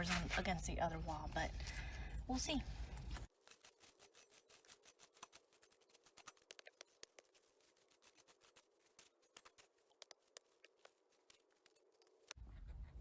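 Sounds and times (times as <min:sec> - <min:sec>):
faint clicks and ticks: 0:01.5 - 0:13.0.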